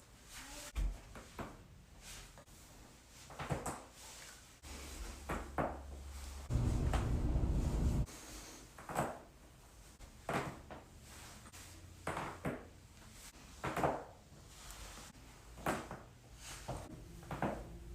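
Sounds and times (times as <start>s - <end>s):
low steady hum: 6.4s - 8.1s, 16.9s - 17.9s.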